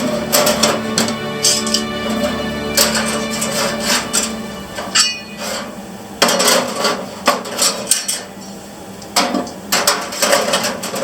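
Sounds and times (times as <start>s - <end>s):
metal panels clanking and scraping: 5.0s - 8.3s, 9.3s - 11.0s.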